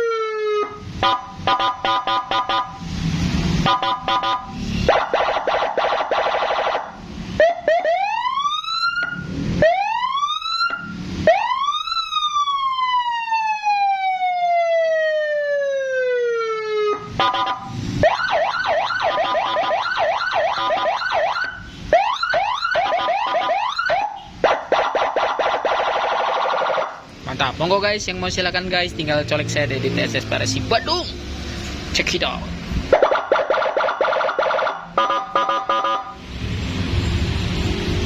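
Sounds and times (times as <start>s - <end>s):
siren fast yelp: 0.0s - 2.8s, 3.6s - 27.0s, 32.9s - 36.2s
short harsh siren blasts: 0.0s - 27.0s, 32.9s - 36.6s
police siren wailing: 0.0s - 31.4s, 32.8s - 36.2s.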